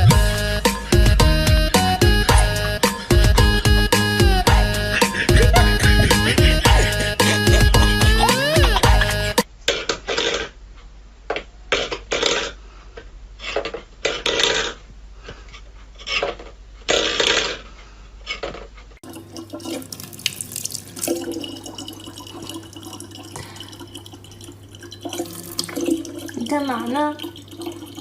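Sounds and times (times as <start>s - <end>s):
water splashing in a sink: 19.0s - 28.0s.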